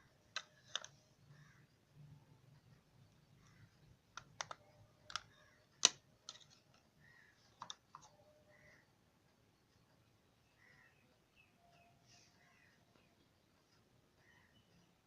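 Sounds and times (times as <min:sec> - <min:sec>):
hard plastic clicks and taps: 0:00.3 - 0:01.0, 0:04.1 - 0:06.9, 0:07.5 - 0:08.2.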